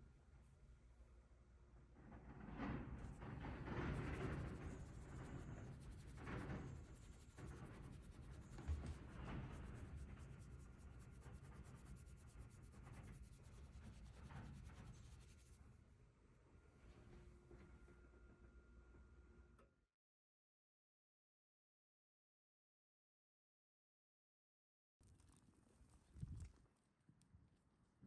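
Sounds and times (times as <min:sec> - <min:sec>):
faint rubbing: 0:02.9 - 0:15.6.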